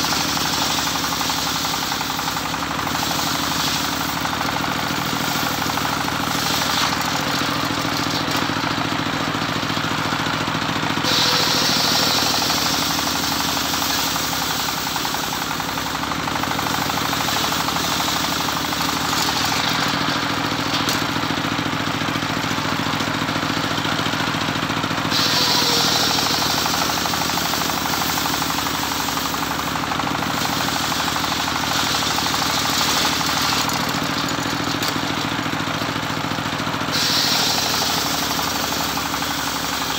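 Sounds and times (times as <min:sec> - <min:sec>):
circular sawmill engine running: 0:00.0 - 0:39.9
high-pitched saw cutting wood: 0:11.0 - 0:15.9, 0:25.1 - 0:35.2, 0:36.9 - 0:39.9.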